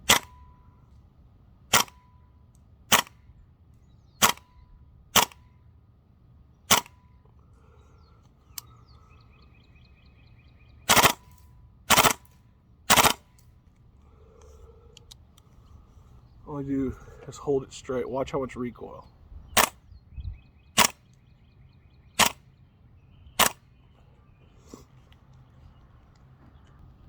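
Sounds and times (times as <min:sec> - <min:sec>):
airsoft rifle shots: 0:00.0 - 0:00.4, 0:01.7 - 0:02.1, 0:02.9 - 0:03.2, 0:04.2 - 0:05.5, 0:06.7 - 0:07.0, 0:10.9 - 0:12.3, 0:12.9 - 0:13.4, 0:19.6 - 0:19.8, 0:20.8 - 0:21.1, 0:22.2 - 0:22.4, 0:23.4 - 0:23.6.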